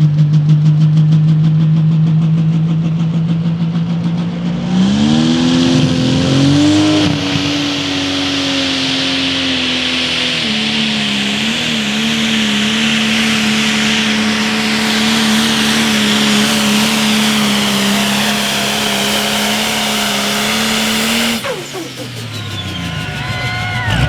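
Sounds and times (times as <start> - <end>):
diesel engine running flat out: 0.0 - 24.0
high turbo whine: 0.0 - 24.0.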